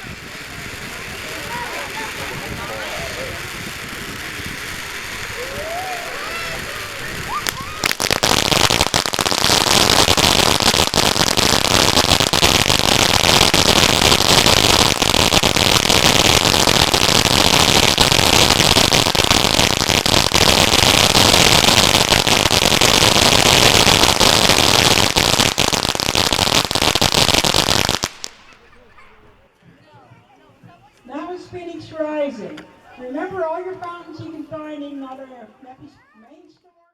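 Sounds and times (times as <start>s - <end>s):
firework crackles: 0.0s - 29.4s
firework fountain hissing: 0.0s - 29.4s.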